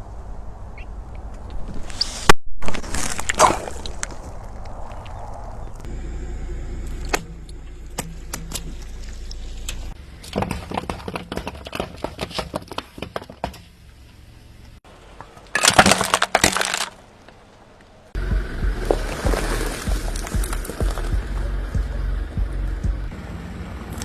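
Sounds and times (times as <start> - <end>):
objects crunching as crushed: 2.6 - 5.5, 15.0 - 17.3, 18.6 - 21.5.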